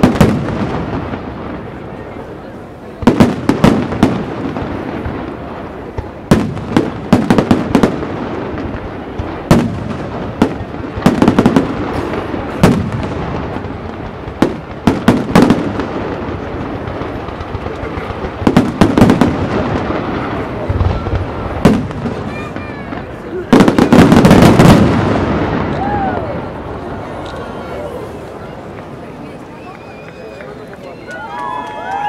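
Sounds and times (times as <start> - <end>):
crackle of small fireworks: 0.0 - 32.0.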